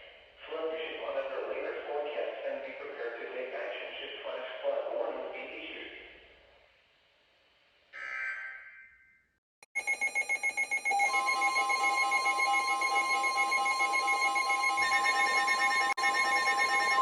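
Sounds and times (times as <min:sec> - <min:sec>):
continuous alarm tone: 0:09.7 - 0:17.0
rapid regular beeping: 0:09.7 - 0:17.0.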